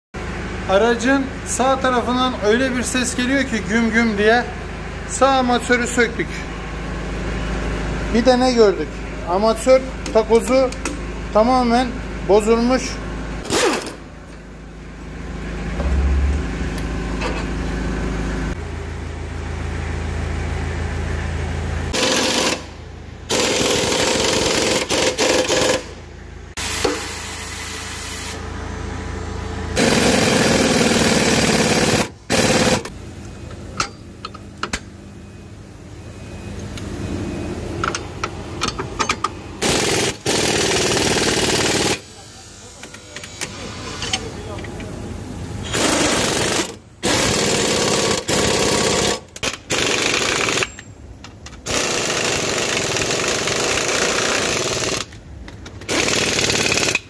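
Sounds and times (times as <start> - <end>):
pneumatic impact wrench rattling: 13.4 - 14.0, 21.9 - 26.0, 29.8 - 32.9, 38.6 - 42.2, 45.6 - 57.0
low steady hum: 13.8 - 21.8.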